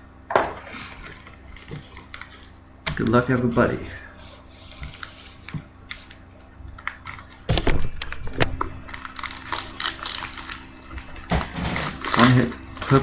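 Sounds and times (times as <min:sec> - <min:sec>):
cards clicking and rustling: 0:00.3 - 0:03.6, 0:04.7 - 0:13.0
wrapper crinkling and tearing: 0:00.7 - 0:03.3, 0:06.8 - 0:13.0.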